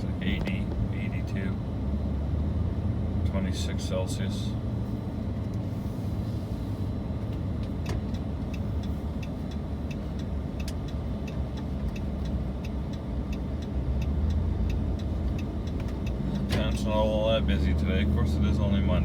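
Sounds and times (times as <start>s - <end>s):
car cabin road and engine noise: 0.0s - 19.0s
faint regular ticking: 7.6s - 16.9s.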